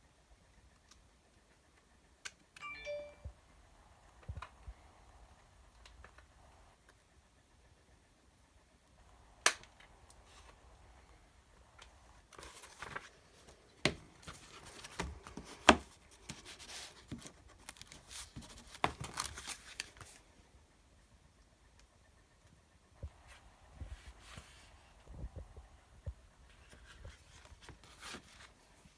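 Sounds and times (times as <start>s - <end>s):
paper rustling and tearing: 12.4s - 13.5s, 14.2s - 20.2s.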